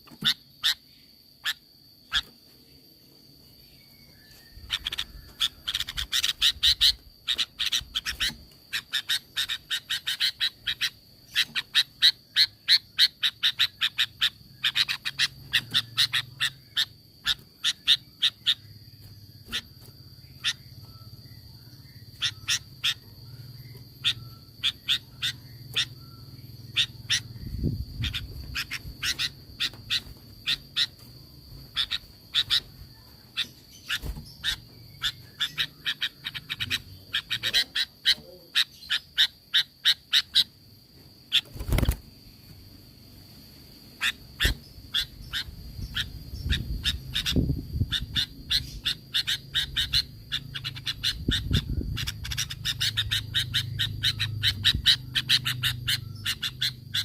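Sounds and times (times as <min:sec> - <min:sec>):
bird chattering calls: 0:00.0 - 0:02.4, 0:04.4 - 0:42.1, 0:43.9 - 0:57.0.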